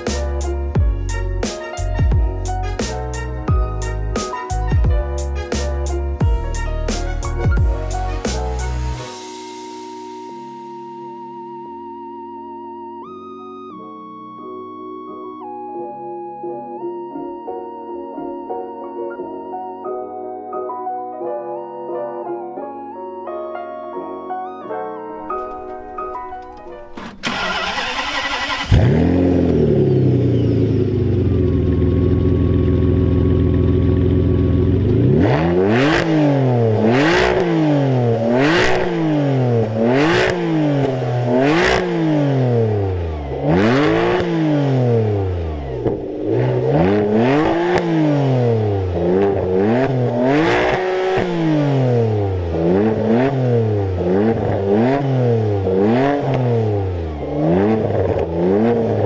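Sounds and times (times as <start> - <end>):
exhaust cracking: 25.3 - 55.0
car engine idling and revving: 27.0 - 59.0.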